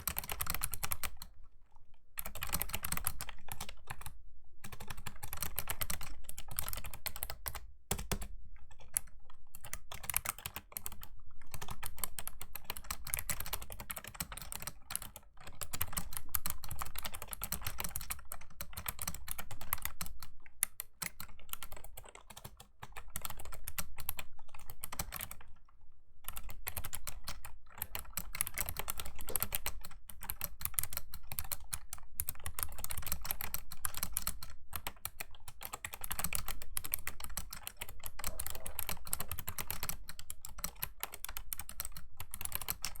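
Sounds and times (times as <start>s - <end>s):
fast keyboard typing: 0.0s - 1.3s, 2.2s - 25.6s, 26.2s - 43.0s.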